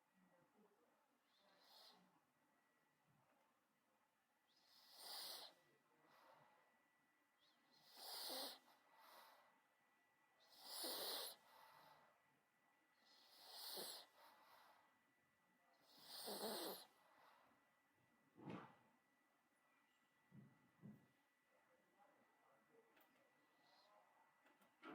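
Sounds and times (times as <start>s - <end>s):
dog snorting rasping breaths: 10.6s - 11.8s, 15.9s - 16.9s.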